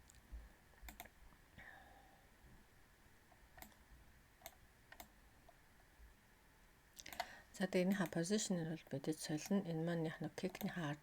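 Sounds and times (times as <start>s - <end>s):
computer mouse clicks: 0.9s - 1.2s, 3.3s - 3.8s, 4.4s - 5.2s, 7.0s - 7.3s, 10.4s - 10.8s.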